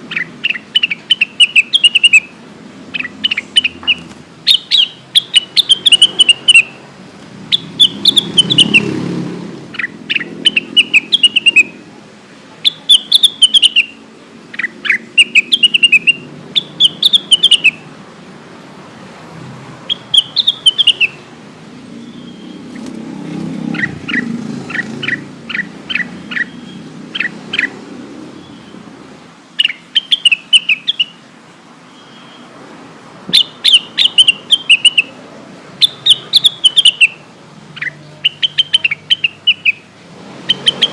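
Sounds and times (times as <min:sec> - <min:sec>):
bird chirping song: 0:00.0 - 0:12.0, 0:12.6 - 0:17.9, 0:19.8 - 0:32.6, 0:33.3 - 0:35.2, 0:35.8 - 0:40.9.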